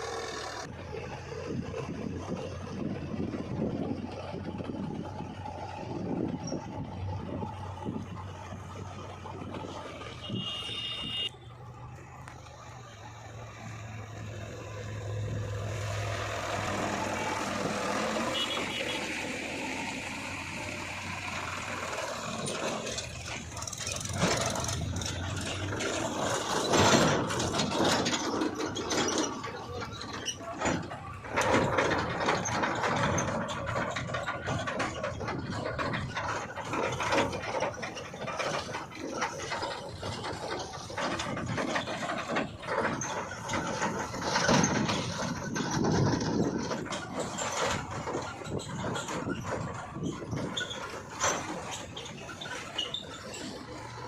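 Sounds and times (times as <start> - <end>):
diesel engine drone: 0.0 - 54.0
machinery knocks and scraping: 1.4 - 11.3, 12.2 - 54.0.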